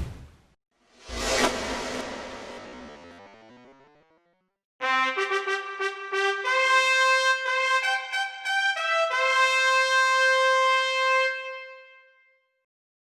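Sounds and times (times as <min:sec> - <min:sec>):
solo trumpet: 0:04.8 - 0:12.4.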